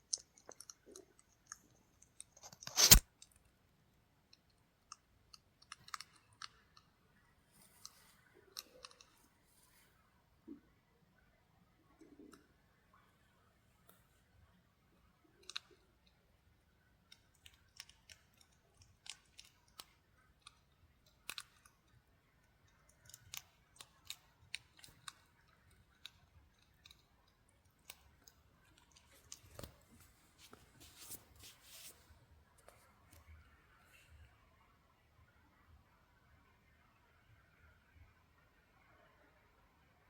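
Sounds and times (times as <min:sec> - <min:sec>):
hedgehog crunching biscuits: 0:00.0 - 0:03.4, 0:04.4 - 0:07.0, 0:07.6 - 0:09.3, 0:16.8 - 0:31.2.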